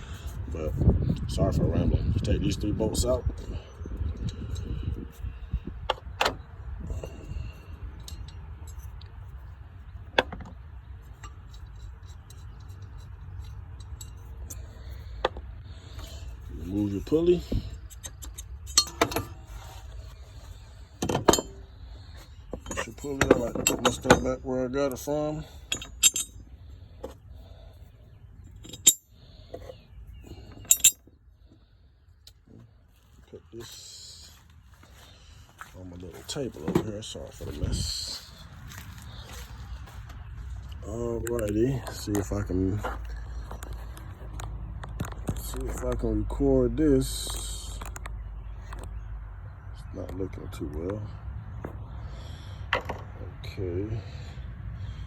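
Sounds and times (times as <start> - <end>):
low steady rumble: 0.0 - 55.0
small metal parts clinking: 11.0 - 20.2, 21.0 - 26.7, 28.4 - 31.1
metallic clinks of hand tools: 22.6 - 26.4, 30.3 - 31.0.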